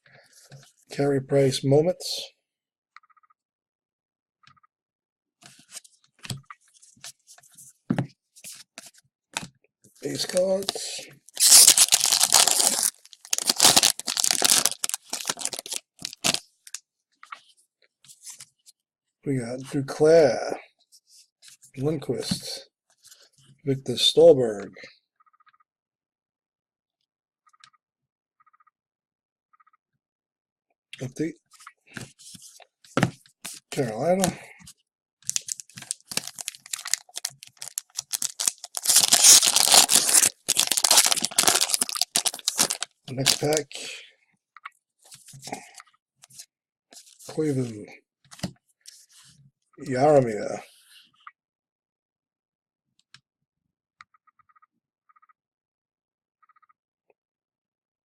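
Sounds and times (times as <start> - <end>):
wrapper crinkling and tearing: 10.2 - 16.4, 35.3 - 43.7.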